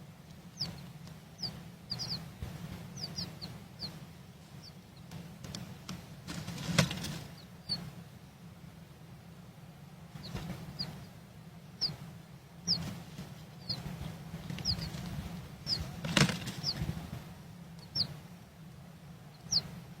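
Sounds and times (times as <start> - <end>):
low hum: 0.0 - 20.0
bird chirping: 0.4 - 5.7, 7.0 - 8.0, 10.1 - 17.1, 17.7 - 18.3, 19.2 - 19.8
rustling thumps: 5.1 - 7.4, 12.8 - 17.3.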